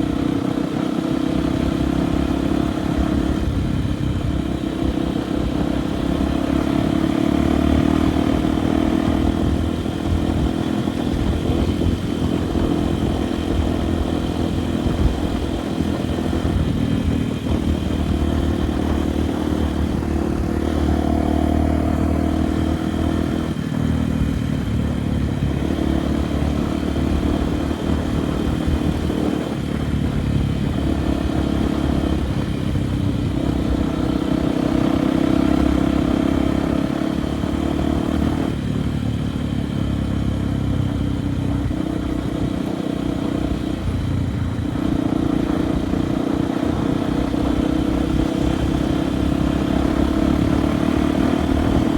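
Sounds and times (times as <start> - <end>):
motorcycle engine running: 0.0 - 51.9.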